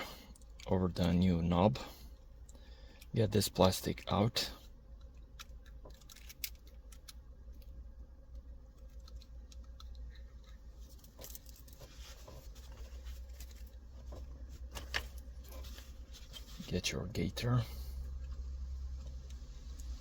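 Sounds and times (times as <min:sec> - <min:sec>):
plastic clicks and scratching: 0:05.0 - 0:16.5.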